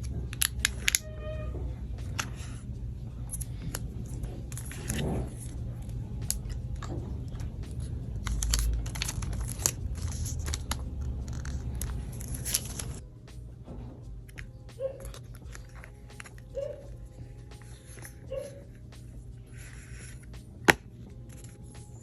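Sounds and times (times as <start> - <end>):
steady low hum: 0.0 - 22.0
packaging tearing and crinkling: 8.3 - 13.0.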